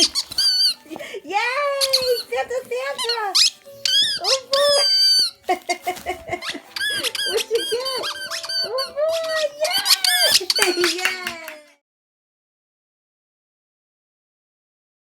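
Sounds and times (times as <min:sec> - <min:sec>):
squeaky dog toy squeaking: 0:00.0 - 0:11.6.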